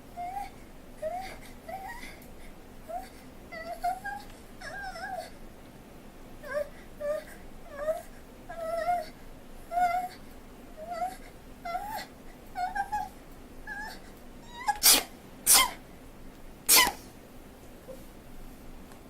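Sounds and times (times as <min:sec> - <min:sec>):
person sneezing: 0:14.8 - 0:15.8, 0:16.7 - 0:17.1.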